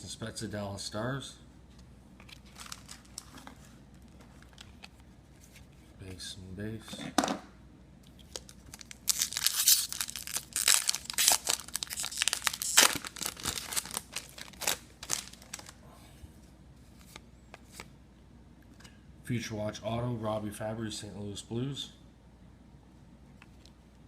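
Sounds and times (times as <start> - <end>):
wrapper tearing and crinkling: 2.3 - 3.5, 8.3 - 15.8.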